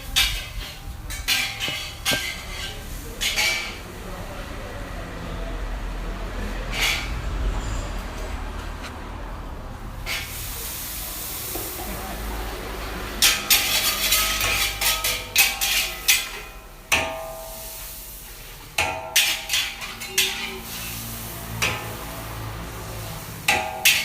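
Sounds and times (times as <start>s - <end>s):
utensils clanging against pans: 0.0s - 3.9s, 6.7s - 7.2s, 13.0s - 17.8s, 18.5s - 22.0s, 23.4s - 24.0s
frying hiss: 0.0s - 4.4s, 9.8s - 24.0s.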